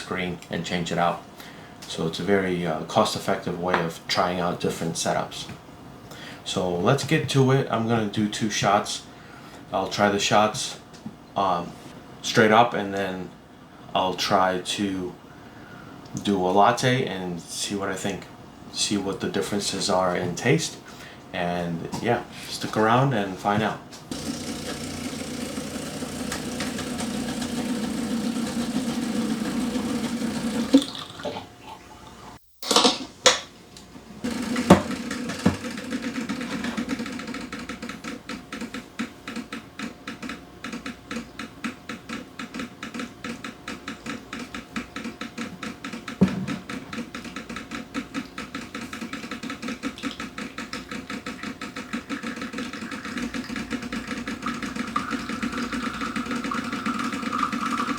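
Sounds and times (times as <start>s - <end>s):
espresso machine pump pulsing: 24.1s - 31.0s, 34.2s - 37.9s, 51.0s - 57.9s.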